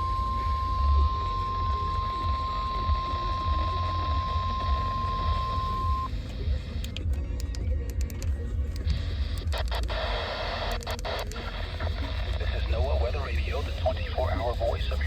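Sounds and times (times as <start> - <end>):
low receiver hum: 0.0 - 15.0
rapid data burst chirping: 9.0 - 15.0.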